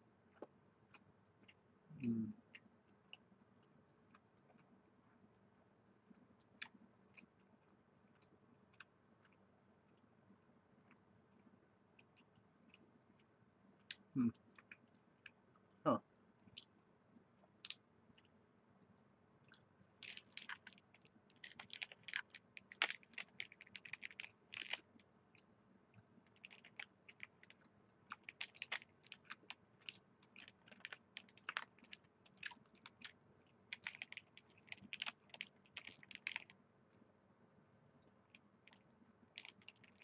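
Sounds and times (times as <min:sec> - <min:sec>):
chewing and crunching: 0:19.4 - 0:25.5, 0:26.3 - 0:36.6, 0:38.7 - 0:40.0.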